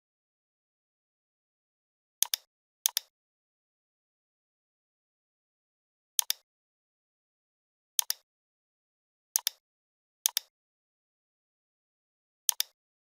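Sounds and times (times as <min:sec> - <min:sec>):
computer mouse button clicks: 0:02.2 - 0:03.1, 0:06.2 - 0:06.4, 0:08.0 - 0:08.2, 0:09.4 - 0:09.6, 0:10.3 - 0:10.5, 0:12.5 - 0:12.8.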